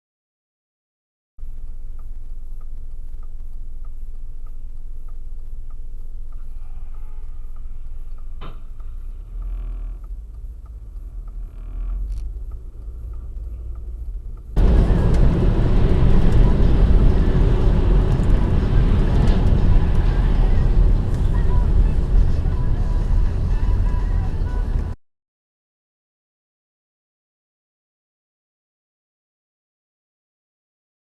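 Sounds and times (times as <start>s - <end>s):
faint regular ticking: 1.4s - 16.9s
car road rumble: 1.4s - 25.0s.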